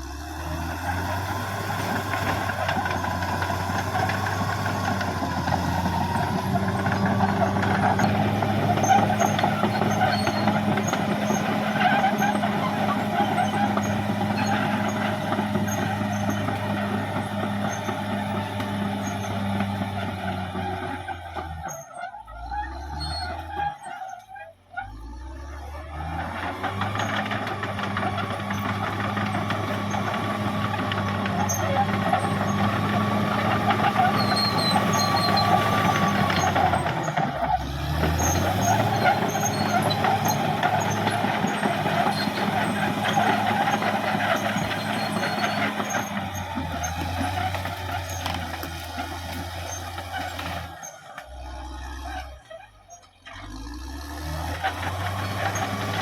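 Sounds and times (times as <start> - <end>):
bulldozer clatter: 0.0 - 56.0
bulldozer engine under load: 0.0 - 56.0.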